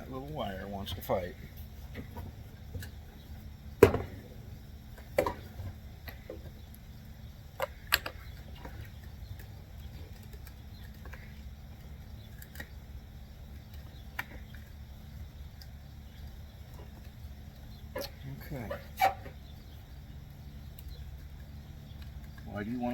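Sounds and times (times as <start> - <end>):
plastic parts knocking and clicking: 3.8 - 4.2.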